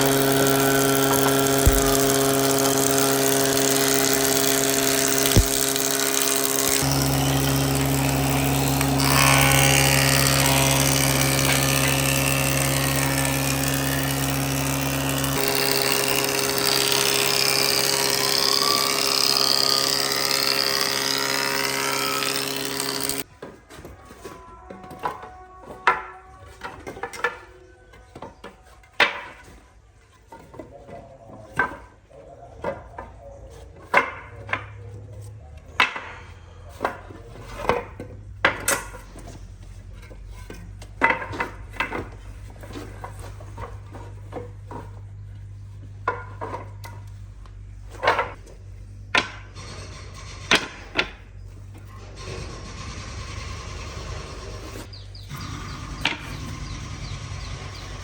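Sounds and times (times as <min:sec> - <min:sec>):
wood and tools clattering: 0:00.0 - 0:58.0.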